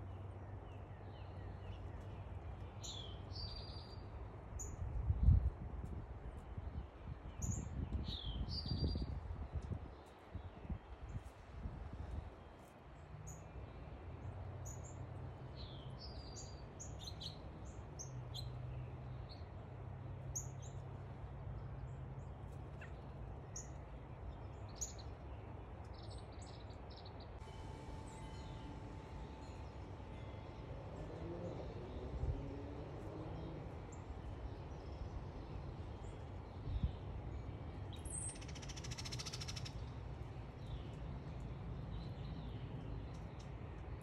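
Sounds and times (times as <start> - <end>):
songbirds chirping: 0.0 - 5.4, 6.4 - 44.0
low background hum: 17.6 - 44.0.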